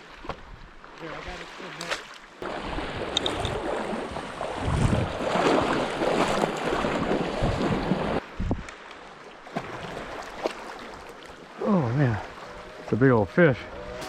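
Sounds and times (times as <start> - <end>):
lake water splashing: 0.0 - 14.0
wind on microphone: 2.6 - 5.8, 6.8 - 8.7.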